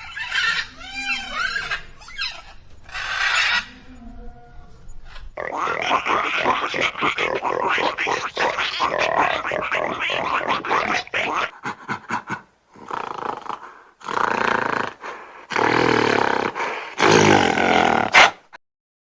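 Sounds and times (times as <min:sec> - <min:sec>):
animal growling and roaring: 0:05.4 - 0:11.5, 0:12.8 - 0:18.4.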